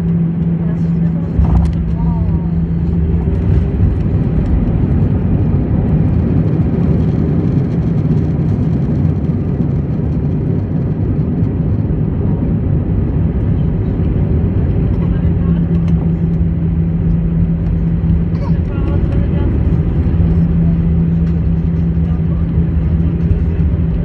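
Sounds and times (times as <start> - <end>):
jet engine cabin rumble: 0.0 - 24.0
low steady hum: 0.0 - 24.0
rushing airflow: 0.6 - 9.9.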